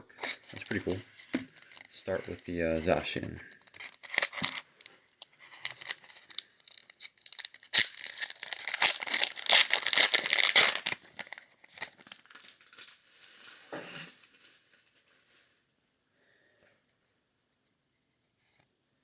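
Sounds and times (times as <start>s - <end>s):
foil wrapper tearing and crinkling: 0.2s - 2.4s, 3.4s - 15.0s
soft rustling of wrapper: 0.2s - 15.7s.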